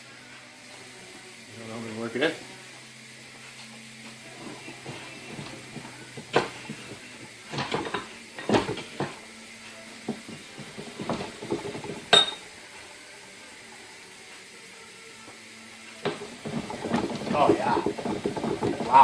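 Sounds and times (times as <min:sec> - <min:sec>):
sharp ringing metal clink: 0:12.2 - 0:12.4.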